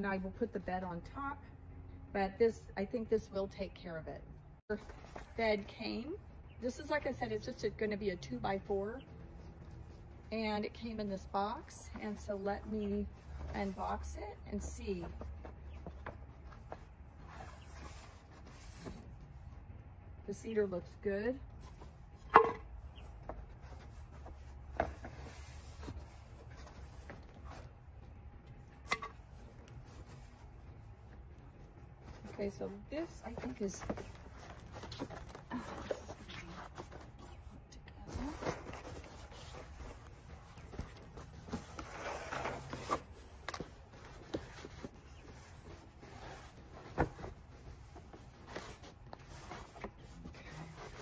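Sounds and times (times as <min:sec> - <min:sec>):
wooden boards knocking: 0:22.3 - 0:22.6
cardboard and boards scraping: 0:32.0 - 0:51.0.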